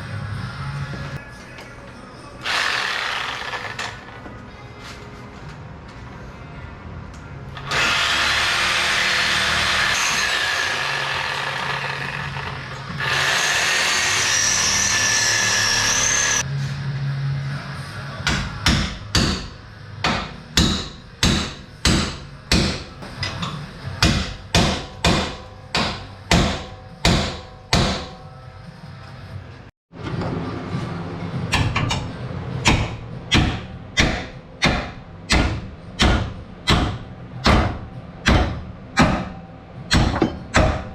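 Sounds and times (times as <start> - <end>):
angle grinder grinding steel: 2.4 - 4.1, 7.6 - 16.4
sharp metal strikes: 31.5 - 40.9.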